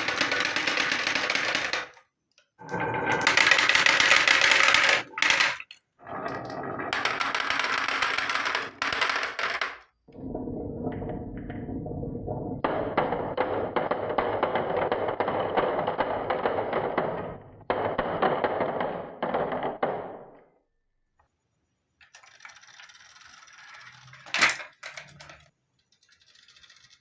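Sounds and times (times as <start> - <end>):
marbles rolling on wooden track: 0.0 - 20.4, 22.0 - 27.0.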